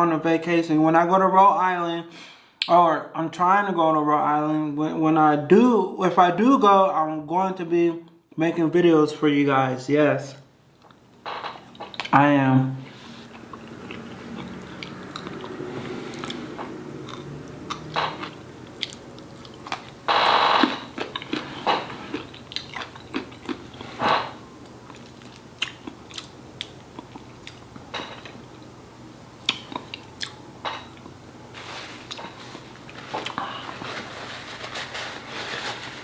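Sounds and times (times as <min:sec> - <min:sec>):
person chewing food: 0:10.8 - 0:12.2, 0:12.9 - 0:28.7, 0:29.4 - 0:34.4
mouth smacks and clicks: 0:17.0 - 0:20.0.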